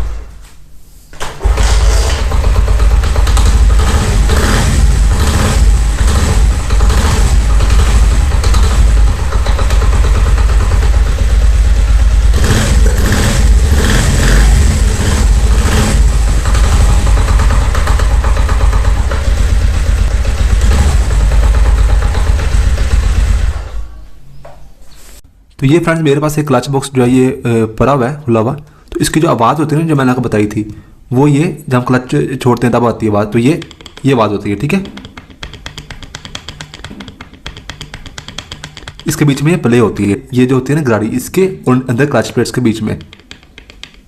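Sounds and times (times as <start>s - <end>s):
motorcycle engine starting and idling: 1.2s - 24.1s, 33.5s - 40.2s
rattling clutch knock: 1.4s - 23.8s, 33.6s - 39.5s, 42.8s - 44.0s.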